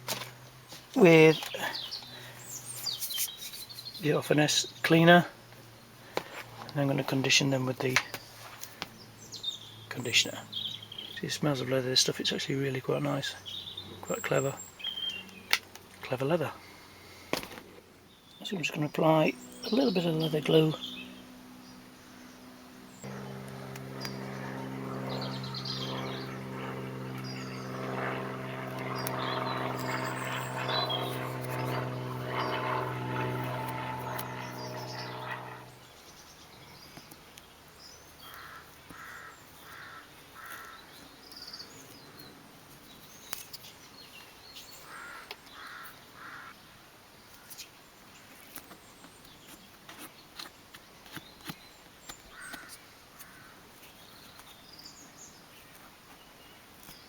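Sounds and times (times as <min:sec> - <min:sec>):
steady mechanical hum: 0:00.0 - 0:39.8
crows cawing: 0:38.2 - 0:41.0, 0:44.8 - 0:46.6, 0:52.3 - 0:53.6.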